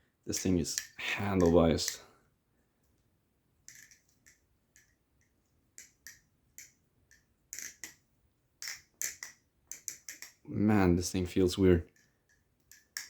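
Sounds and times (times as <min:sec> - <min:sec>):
butterfly knife clicking and clacking: 0:03.7 - 0:05.0, 0:05.8 - 0:08.0, 0:08.6 - 0:10.4, 0:11.9 - 0:13.0.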